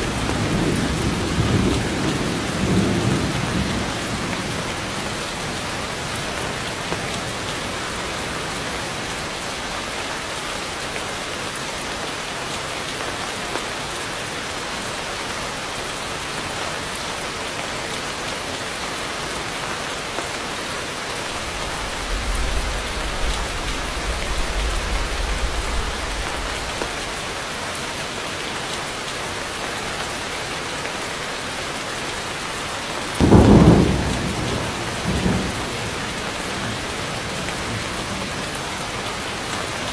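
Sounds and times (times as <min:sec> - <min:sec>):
low rumble of thunder: 0:00.0 - 0:07.5, 0:21.2 - 0:27.4, 0:33.2 - 0:39.0
heavy rain on foliage: 0:00.0 - 0:39.9
loud thunderclap: 0:21.3 - 0:27.3, 0:33.2 - 0:38.4.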